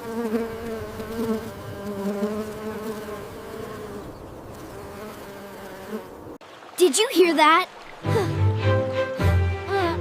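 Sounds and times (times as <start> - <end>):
bee buzzing: 0.0 - 6.4.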